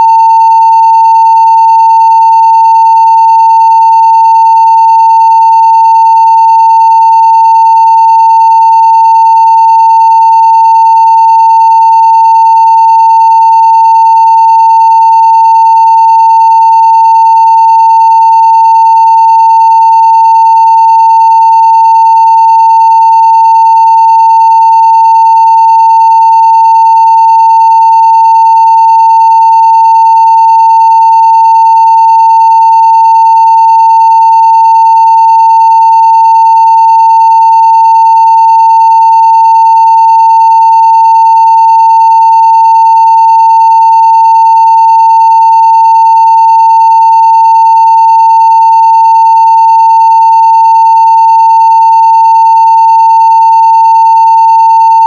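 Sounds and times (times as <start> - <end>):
sine-wave test tone: 0.0 - 55.0.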